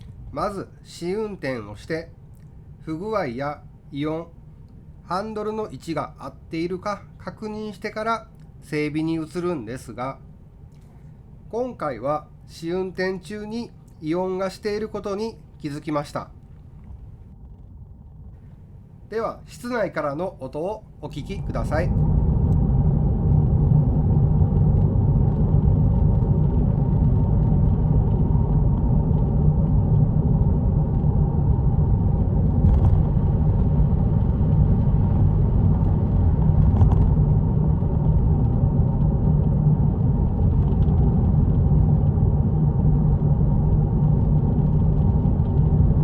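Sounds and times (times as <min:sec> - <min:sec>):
car road noise drone: 0:21.2 - 0:46.0.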